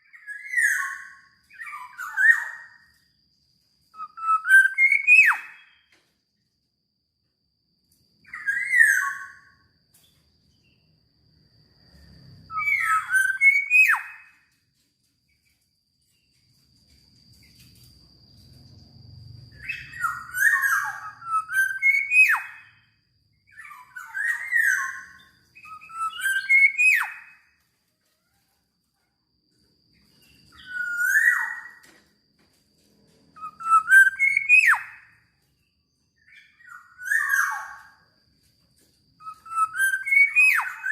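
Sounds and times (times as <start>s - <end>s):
bird singing fluting whistles: 0.0s - 3.0s, 4.0s - 6.0s, 8.2s - 9.8s, 12.0s - 14.5s, 19.5s - 27.5s, 30.1s - 32.0s, 33.4s - 35.4s, 36.1s - 38.0s, 39.2s - 40.9s.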